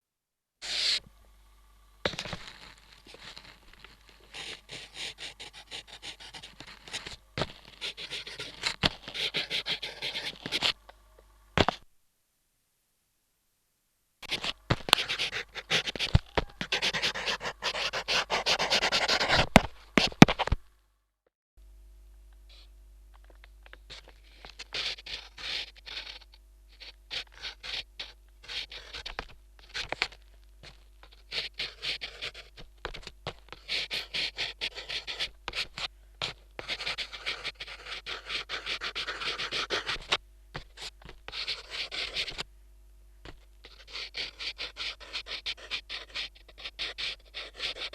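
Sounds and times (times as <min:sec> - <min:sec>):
drawing strokes scratching: 0:00.6 - 0:01.0, 0:02.1 - 0:10.8, 0:14.2 - 0:20.6, 0:23.7 - 0:42.4, 0:43.6 - 0:47.9
low electrical hum: 0:00.6 - 0:47.9.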